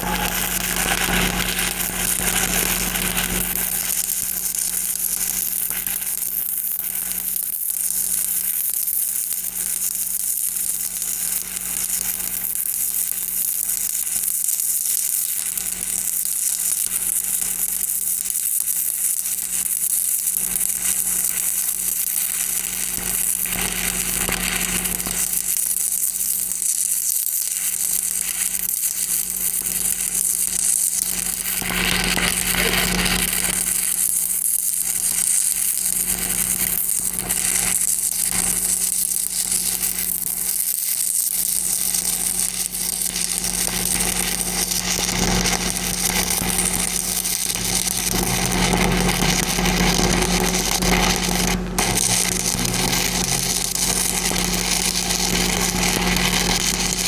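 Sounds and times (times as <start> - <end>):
welding arc crackling: 0.0 - 57.0
steady low hum: 45.0 - 57.0.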